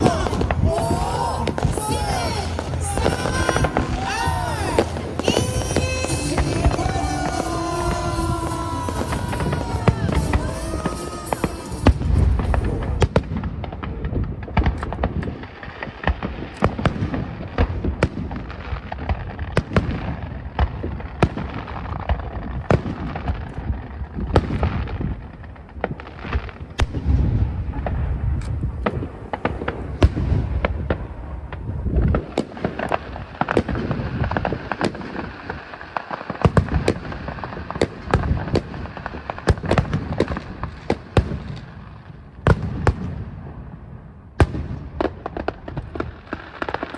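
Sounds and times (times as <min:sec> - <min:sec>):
low rumble of booms: 0:00.0 - 0:35.2.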